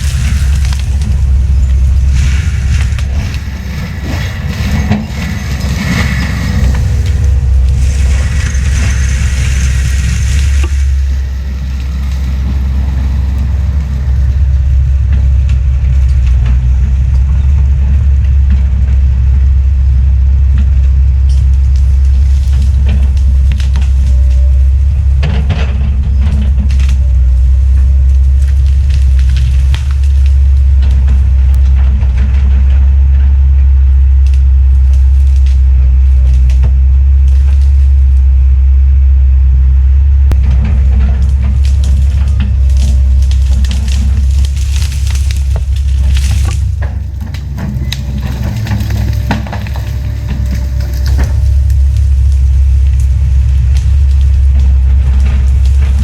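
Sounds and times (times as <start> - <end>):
wood cracking and snapping: 0.0 - 17.3, 20.6 - 38.3, 40.3 - 56.0
deep diesel drone: 0.0 - 56.0.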